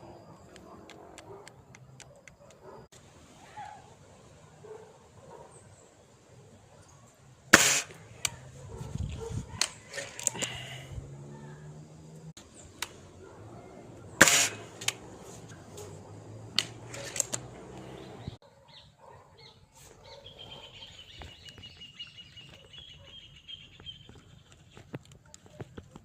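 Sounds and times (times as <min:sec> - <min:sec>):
air rifle shot: 0:07.5 - 0:08.4, 0:14.2 - 0:15.0.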